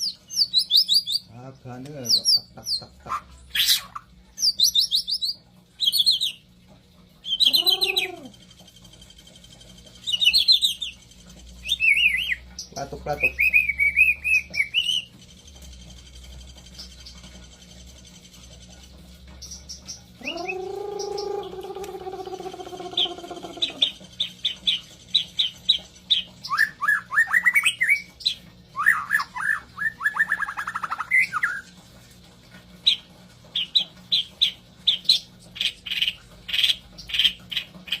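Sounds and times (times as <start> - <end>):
bird song with trills: 0.0 - 1.4, 9.9 - 15.6, 19.4 - 31.7.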